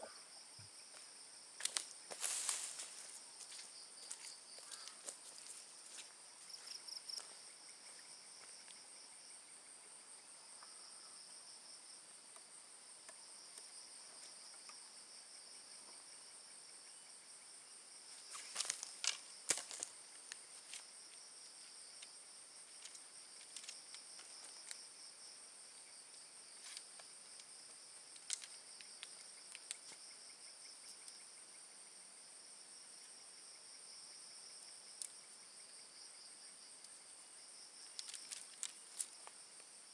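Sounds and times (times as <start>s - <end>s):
insects trilling: 0.0s - 39.9s
clicks and rustles: 22.7s - 24.8s, 28.1s - 30.0s, 37.9s - 39.4s.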